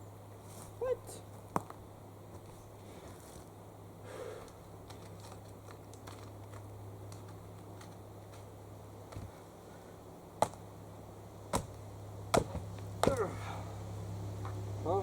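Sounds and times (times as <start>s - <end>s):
faint clicks and rustling: 4.4s - 8.5s
axe striking a log: 11.5s - 13.3s.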